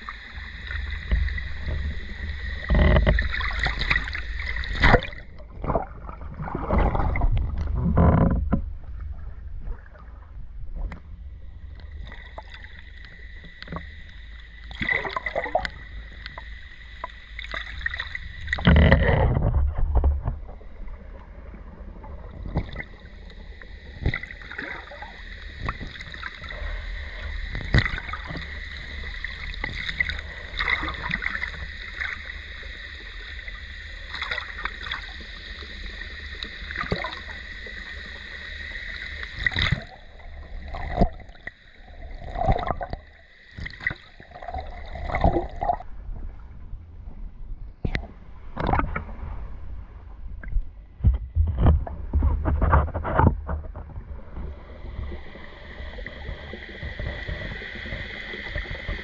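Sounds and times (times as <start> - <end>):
stream water running and splashing: 0.0 - 8.2, 11.6 - 20.8, 21.5 - 45.9.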